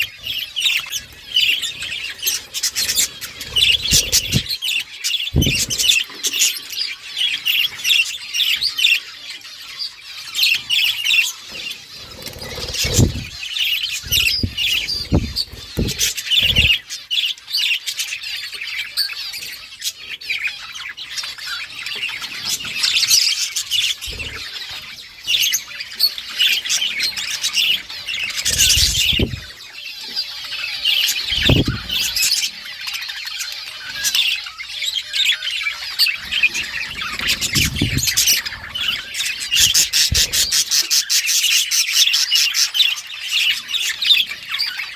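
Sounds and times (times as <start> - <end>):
budgerigars chirping and chattering: 0.0 - 44.9
dull low thuds: 3.6 - 4.5, 5.4 - 5.9, 12.4 - 13.4, 14.0 - 16.7, 28.6 - 29.5, 31.4 - 31.8.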